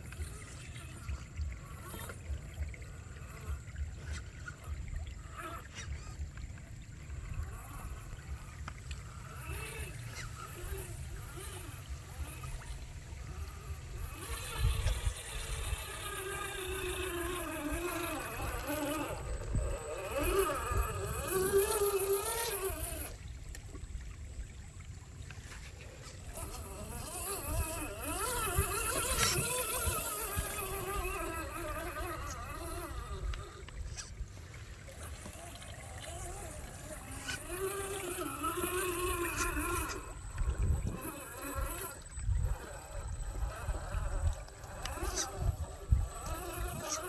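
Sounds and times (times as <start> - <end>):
rc car motor whining: 0.0 - 47.0.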